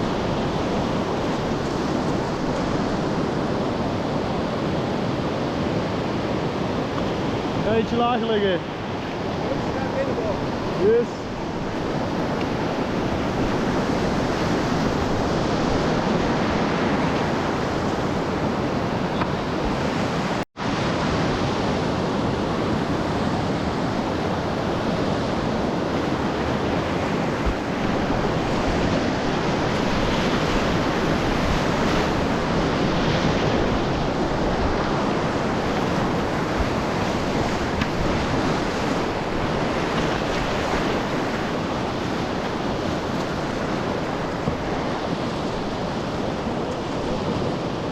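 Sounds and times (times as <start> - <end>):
wind on microphone: 8.8 - 47.9
whitewater rushing: 9.4 - 18.9, 19.6 - 47.9.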